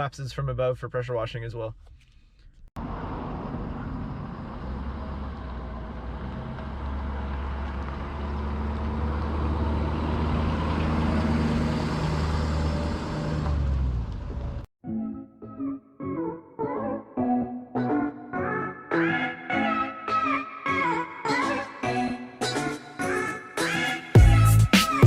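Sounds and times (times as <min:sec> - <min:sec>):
low engine hum: 0:02.8 - 0:14.7
tyre and road noise: 0:02.8 - 0:14.7.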